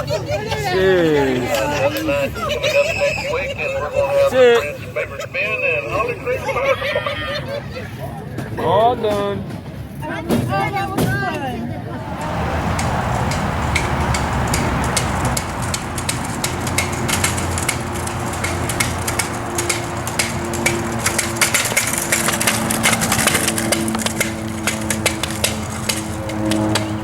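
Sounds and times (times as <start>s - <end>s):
train engine rumbling: 11.9s - 27.0s.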